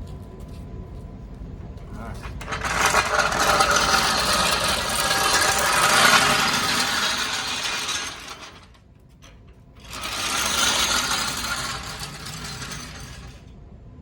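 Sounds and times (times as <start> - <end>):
fast mechanical rattle: 2.3 - 13.4.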